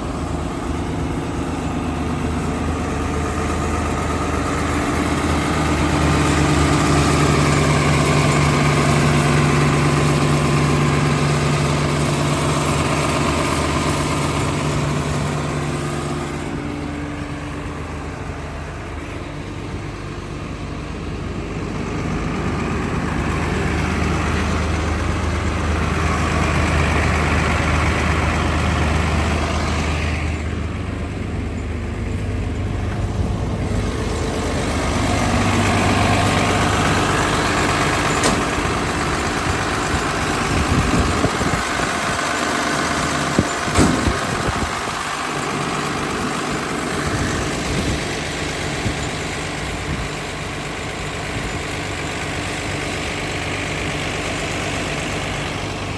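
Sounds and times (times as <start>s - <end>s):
excavator diesel engine running: 0.0s - 55.9s
sharp knocks: 43.6s - 44.6s.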